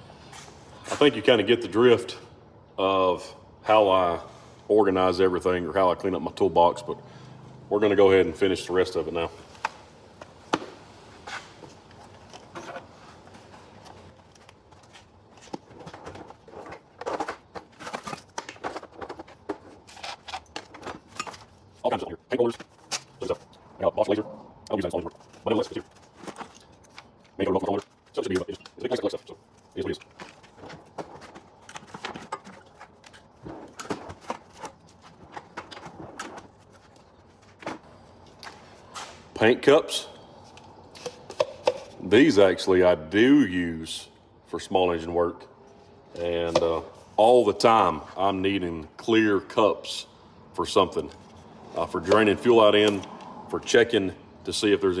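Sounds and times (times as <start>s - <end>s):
tools knocking and clattering: 15.8s - 21.6s.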